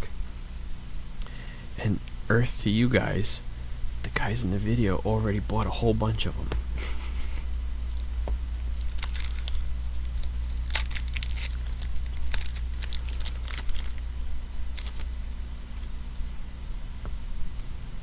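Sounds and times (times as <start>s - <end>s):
crisp crackles: 7.8s - 16.0s
wrappers crinkling and tearing: 7.9s - 15.2s.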